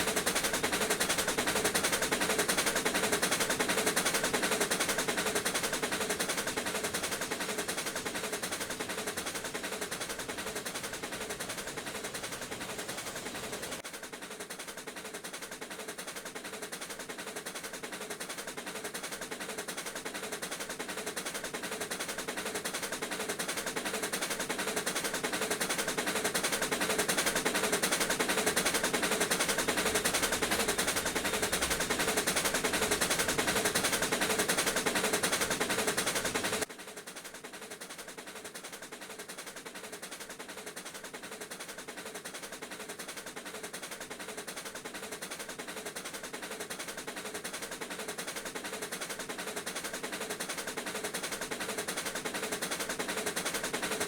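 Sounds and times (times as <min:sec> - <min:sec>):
steam locomotives chugging: 0:00.0 - 0:13.8, 0:19.7 - 0:36.7.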